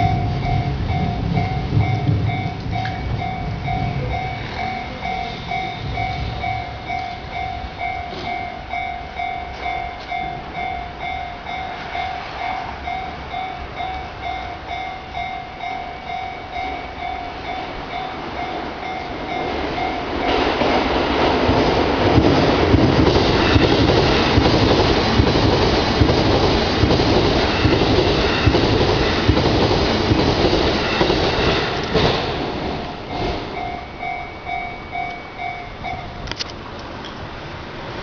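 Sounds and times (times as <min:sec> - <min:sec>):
level crossing bell ringing: 0:00.0 - 0:20.4, 0:33.0 - 0:36.3
electric train rumbling: 0:00.0 - 0:38.0.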